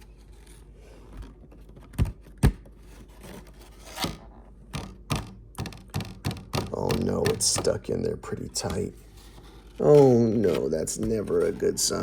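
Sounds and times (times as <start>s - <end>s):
sharp knocks: 4.7s - 7.9s
plastic card sleeve scraping: 8.6s - 12.0s.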